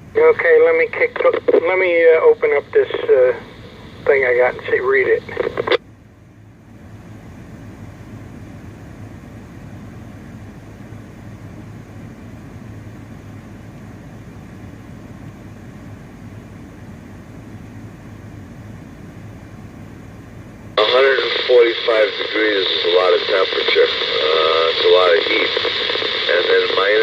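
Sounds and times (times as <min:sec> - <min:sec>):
radio static hiss: 0:00.0 - 0:05.8, 0:20.8 - 0:27.0
constant low hum: 0:00.0 - 0:27.0.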